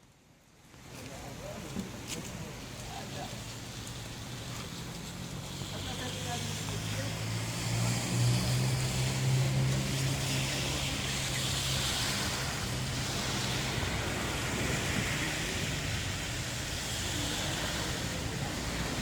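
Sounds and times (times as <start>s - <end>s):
heavy rain: 0.0s - 19.0s
vehicle engine humming: 2.4s - 19.0s.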